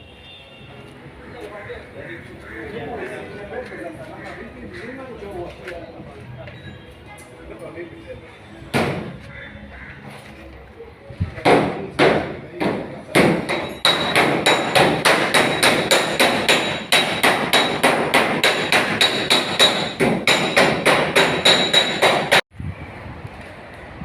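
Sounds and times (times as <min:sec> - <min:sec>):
hammer striking metal: 0:11.4 - 0:22.4.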